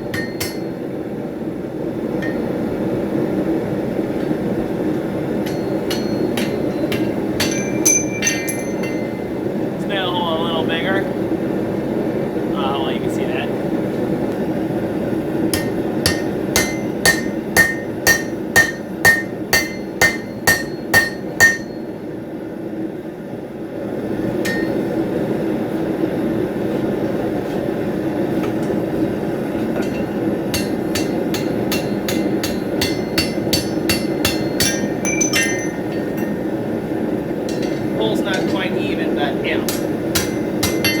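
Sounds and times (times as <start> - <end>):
hammer striking steel on anvil: 0.0 - 0.9, 2.1 - 2.8, 5.0 - 9.3, 15.5 - 21.9, 24.2 - 25.0, 29.7 - 36.6, 37.4 - 41.0.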